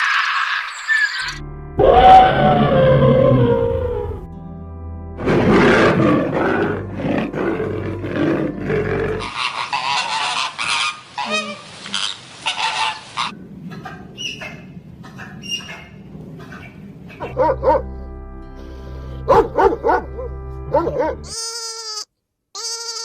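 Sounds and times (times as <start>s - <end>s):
animal calls: 5.8s - 17.4s.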